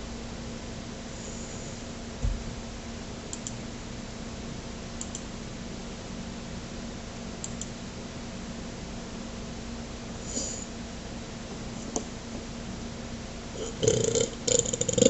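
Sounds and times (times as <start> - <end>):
room tone hiss and hum: 0.0 - 15.0
low thump: 2.2 - 2.6
faint double clicks: 3.3 - 3.6, 5.0 - 5.3, 7.4 - 7.8.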